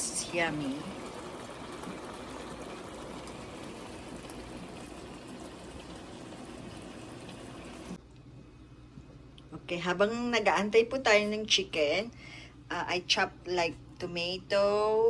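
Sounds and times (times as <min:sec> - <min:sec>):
chicken sizzling in oil: 0:00.0 - 0:08.0.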